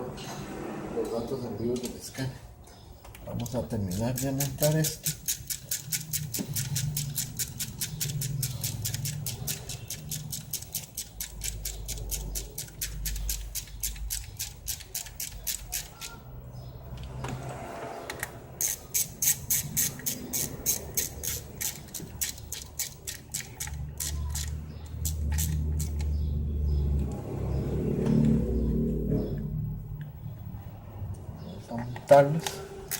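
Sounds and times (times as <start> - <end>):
ratchet wrench clicking: 3.4 - 16.2, 18.6 - 26.2.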